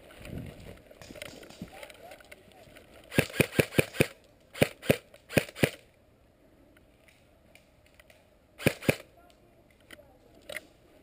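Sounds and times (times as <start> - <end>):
airsoft gun shots: 3.1 - 5.8, 8.6 - 9.1.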